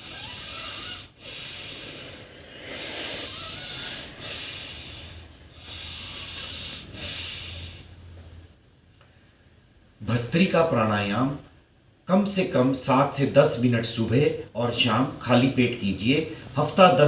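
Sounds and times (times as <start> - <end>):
man breathing deeply: 0.0 - 8.2.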